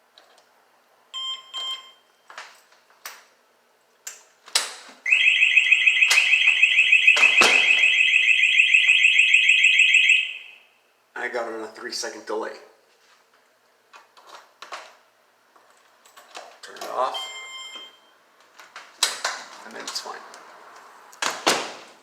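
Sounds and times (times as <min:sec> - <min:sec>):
short beeps: 0:01.2 - 0:02.1, 0:05.1 - 0:10.7, 0:17.2 - 0:18.1
pulsing high-pitched alarm tone: 0:05.1 - 0:10.7.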